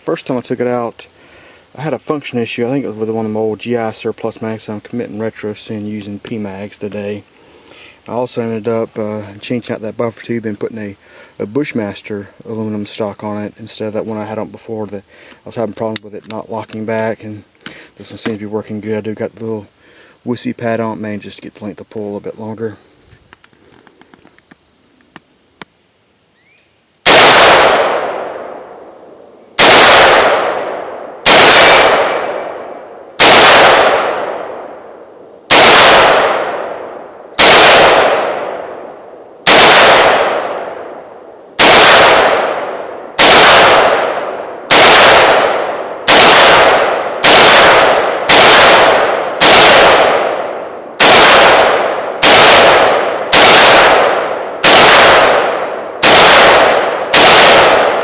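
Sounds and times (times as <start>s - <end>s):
rifle shots with echo: 27.0s - 58.0s.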